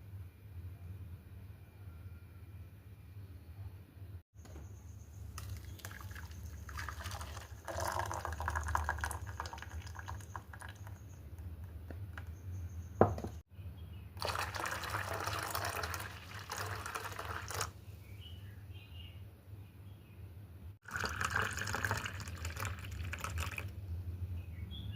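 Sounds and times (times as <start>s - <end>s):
liquid pouring: 5.4s - 11.2s, 14.2s - 17.8s, 20.8s - 23.7s.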